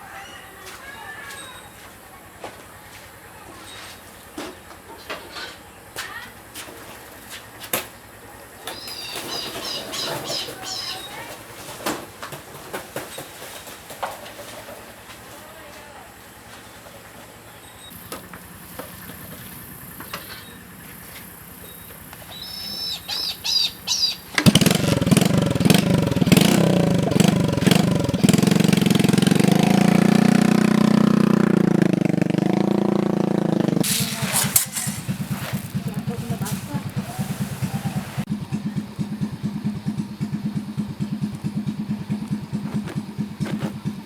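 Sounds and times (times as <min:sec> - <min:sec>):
motorcycle engine revving and idling: 0:05.5 - 0:44.0.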